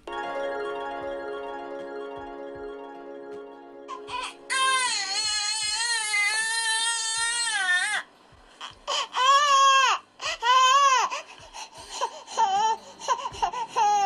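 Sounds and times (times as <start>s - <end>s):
infant crying: 3.9s - 14.0s.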